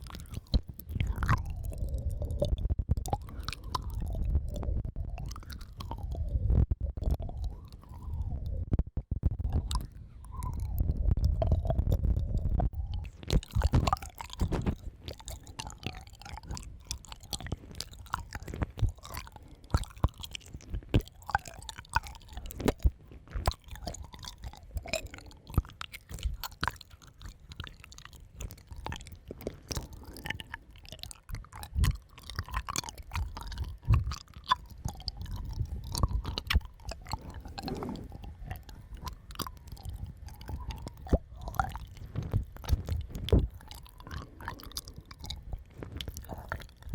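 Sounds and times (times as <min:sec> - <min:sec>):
soft low rumble: 0:00.0 - 0:15.2, 0:34.9 - 0:46.9
wet mouth clicks and smacks: 0:00.0 - 0:46.9.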